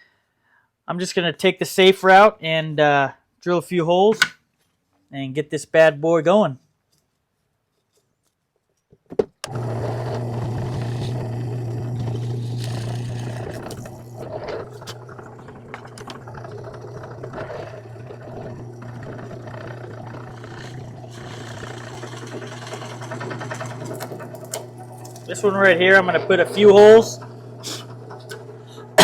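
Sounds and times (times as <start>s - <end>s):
drill press motor humming: 9.4s - 29.0s.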